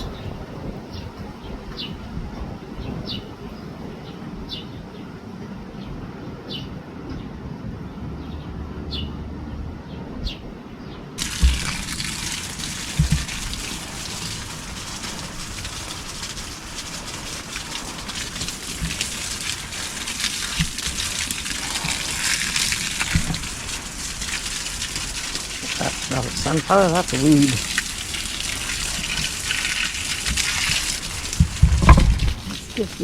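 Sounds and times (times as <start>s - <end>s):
water gushing onto plants: 11.2s - 33.0s
low knocks: 31.4s - 32.6s.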